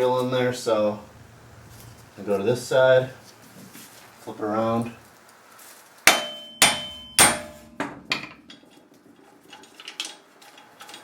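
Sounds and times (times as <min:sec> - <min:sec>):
hammer blows on metal: 0:06.1 - 0:08.0.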